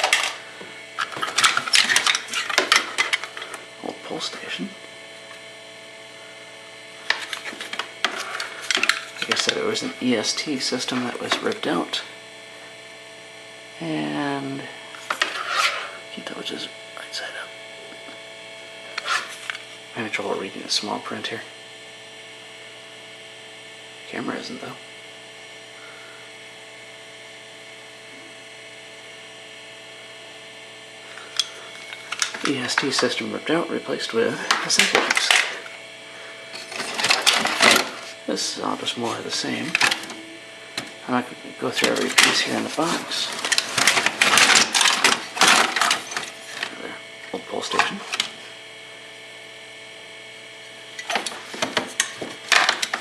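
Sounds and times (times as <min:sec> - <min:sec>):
clicks and knocks of hard parts: 0:00.0 - 0:00.4, 0:01.0 - 0:03.5, 0:07.1 - 0:09.6, 0:34.5 - 0:35.7, 0:36.6 - 0:38.1, 0:39.7 - 0:40.2, 0:41.8 - 0:42.5, 0:43.3 - 0:46.7, 0:51.0 - 0:53.0
steady electrical hum: 0:00.0 - 0:53.0.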